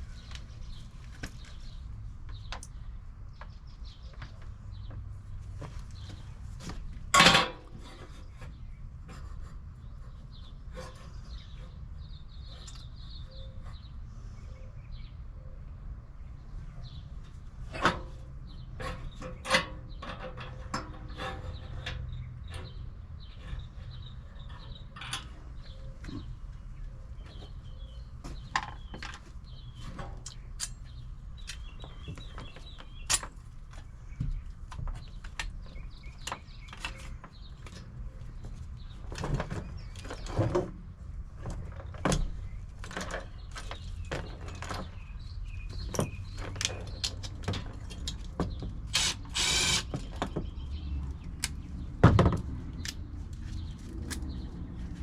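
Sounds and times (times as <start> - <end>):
tools and metal parts clattering: 7.1 - 8.5, 17.7 - 23.7, 41.4 - 50.4.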